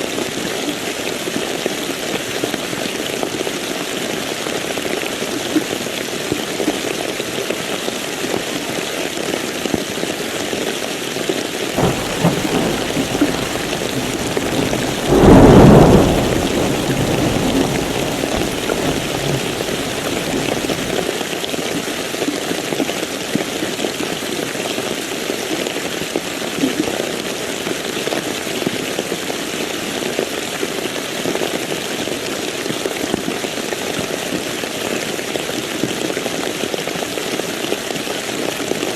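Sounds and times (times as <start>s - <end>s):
heavy rain: 11.8s - 21.1s
thunderclap rumbling: 11.8s - 21.1s.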